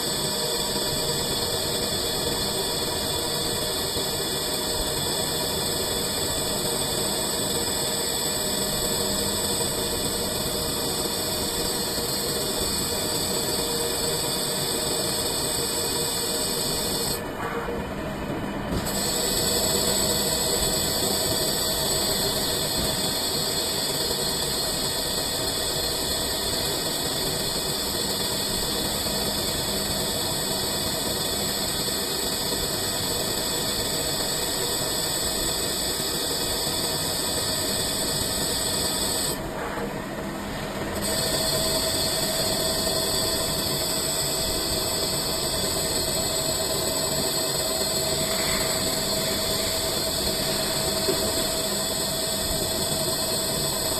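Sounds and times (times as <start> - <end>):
lathe machine running: 0.0 - 17.2, 18.5 - 53.9
high cutting hiss: 41.0 - 53.9.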